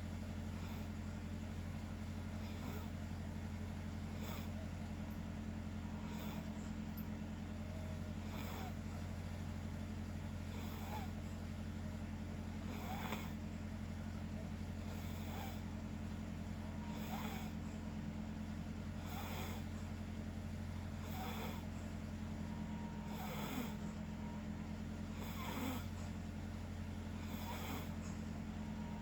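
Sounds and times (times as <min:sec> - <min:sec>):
steady low hum: 0:00.0 - 0:29.0
people snoring: 0:02.4 - 0:02.9, 0:04.1 - 0:04.6, 0:06.0 - 0:06.6, 0:08.2 - 0:08.8, 0:10.5 - 0:11.2, 0:12.6 - 0:13.4, 0:14.8 - 0:15.7, 0:16.8 - 0:17.6, 0:19.0 - 0:19.7, 0:21.0 - 0:21.7, 0:23.0 - 0:24.0, 0:25.1 - 0:26.2, 0:27.2 - 0:28.1.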